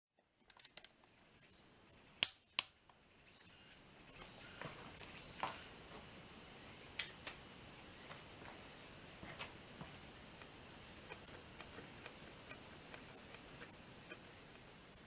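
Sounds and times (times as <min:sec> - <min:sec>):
high-pitched insect chorus: 0:00.2 - 0:15.0
sharp clicks: 0:10.4 - 0:14.7.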